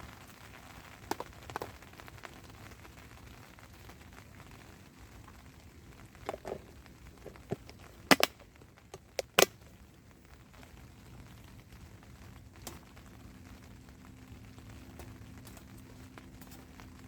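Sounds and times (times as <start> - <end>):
faint steady rain: 0.0 - 17.0
sharp knocks and cracks: 1.0 - 1.8, 6.2 - 9.6.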